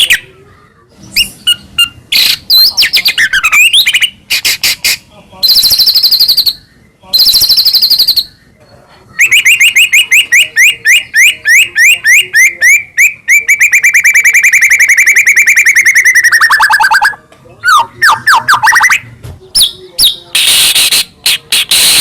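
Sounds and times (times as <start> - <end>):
bird singing whistled notes: 5.5 - 8.4.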